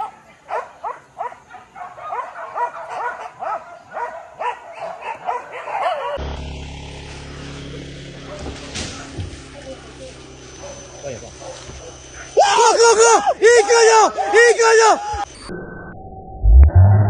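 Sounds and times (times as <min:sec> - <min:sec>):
dogs yelping: 0:00.0 - 0:06.2, 0:09.0 - 0:15.3.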